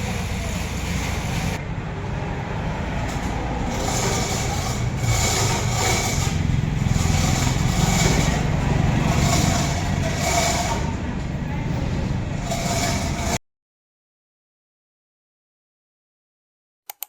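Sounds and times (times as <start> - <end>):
engine running with low rumble: 0.0 - 13.4.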